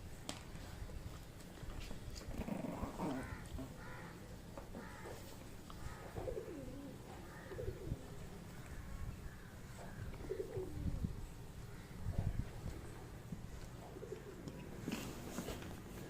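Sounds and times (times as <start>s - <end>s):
puppy whiny grumbles: 2.2s - 3.7s.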